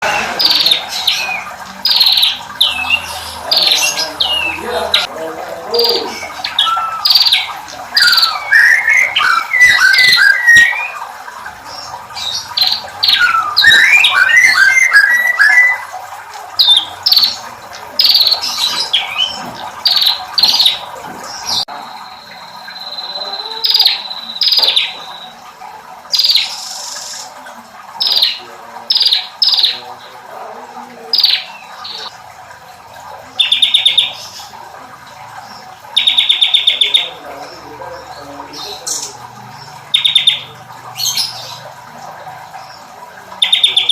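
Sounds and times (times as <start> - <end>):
bird chips and trills: 5.8 - 25.4, 35.4 - 41.7.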